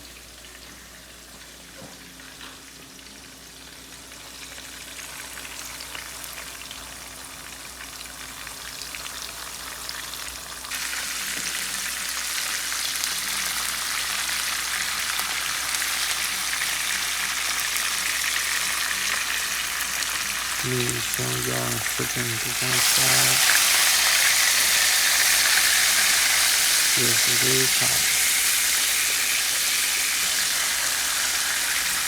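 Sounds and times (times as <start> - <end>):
steak sizzling in a pan: 8.4 - 32.0.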